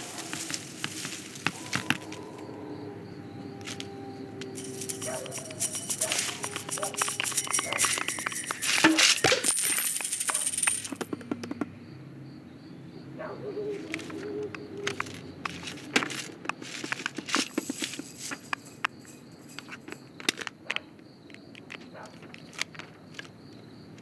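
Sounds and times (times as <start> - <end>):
faint high chirp: 2.1 - 10.6
metallic clicks and jingles: 4.5 - 11.2, 16.7 - 20.3.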